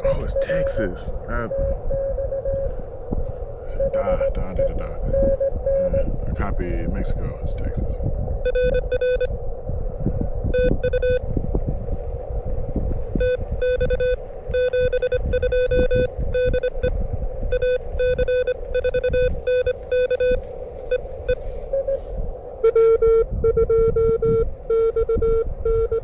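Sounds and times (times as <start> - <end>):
wind rumble on microphone: 0.0 - 26.0
morse code beeps: 8.4 - 9.3, 10.5 - 11.2, 13.2 - 16.9, 17.5 - 22.0, 22.6 - 26.0.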